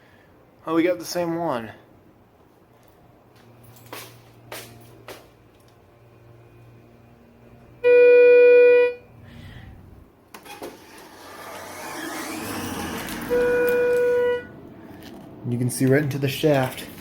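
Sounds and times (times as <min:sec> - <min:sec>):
elevator doors and machinery whirring: 0:02.8 - 0:08.2, 0:09.0 - 0:15.2
elevator beep: 0:11.4 - 0:14.6.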